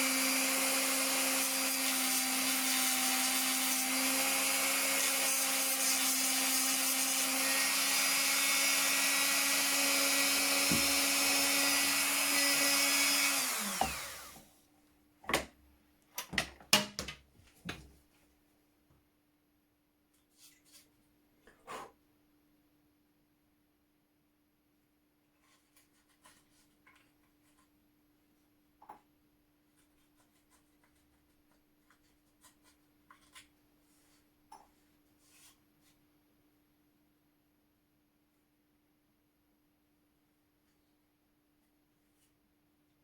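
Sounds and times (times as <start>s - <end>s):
power tool motor winding down: 7.2s - 14.4s.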